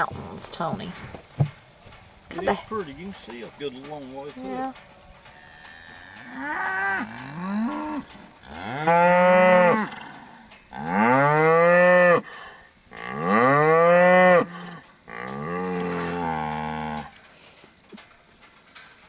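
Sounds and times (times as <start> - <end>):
cows mooing: 5.2 - 17.2.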